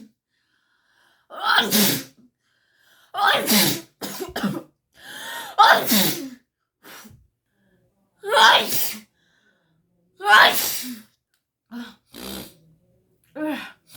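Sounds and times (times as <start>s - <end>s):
woman sneezing: 1.4s - 2.2s, 3.2s - 4.6s, 5.5s - 6.4s, 8.3s - 9.0s, 10.3s - 11.1s.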